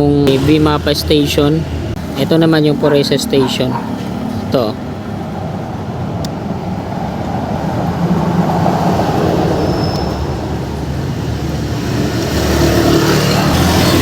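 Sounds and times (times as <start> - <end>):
vehicle engine rumbling: 0.0 - 14.0.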